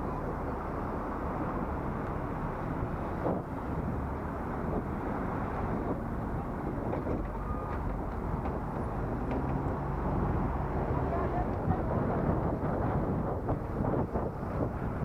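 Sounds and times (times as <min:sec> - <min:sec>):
road noise: 0:00.0 - 0:15.0
wind rumble: 0:00.0 - 0:15.0.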